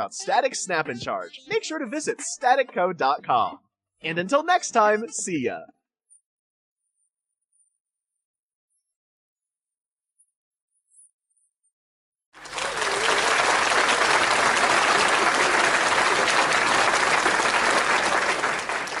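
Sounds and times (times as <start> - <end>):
crowd applauding: 12.4 - 19.0.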